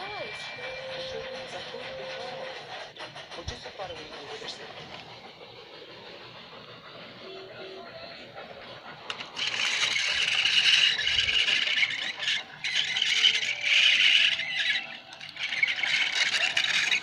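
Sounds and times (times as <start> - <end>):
toy train squealing rattle: 0.0 - 17.0.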